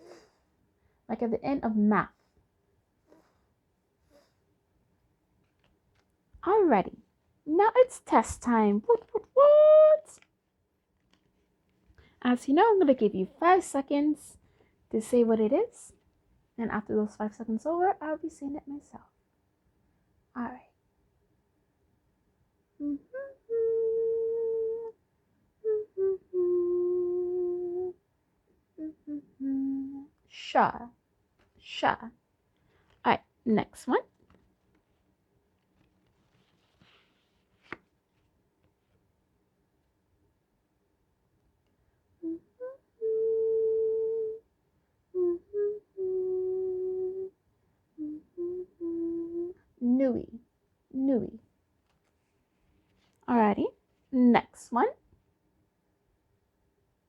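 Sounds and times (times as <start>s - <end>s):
person humming a tune: 22.8s - 25.0s, 25.6s - 28.0s, 28.8s - 30.2s, 42.2s - 44.5s, 45.1s - 47.4s, 48.0s - 50.3s.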